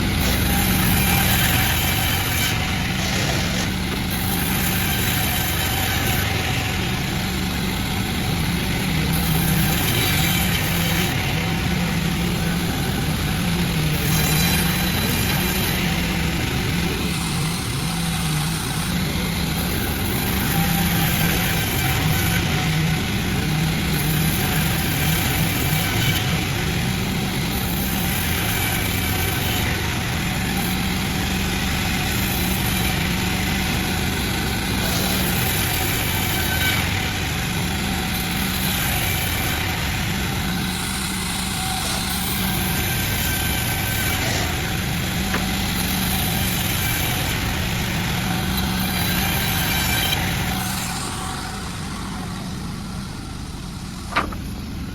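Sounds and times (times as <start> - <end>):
machinery hissing: 0.0 - 21.0
sawmill machinery drone: 0.0 - 54.9.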